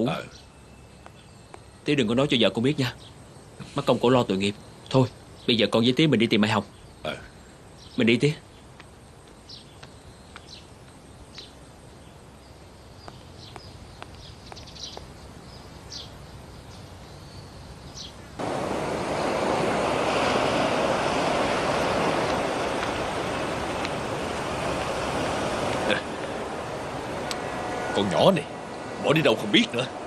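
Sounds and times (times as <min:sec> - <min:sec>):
steady rushing noise: 0:18.3 - 0:30.0.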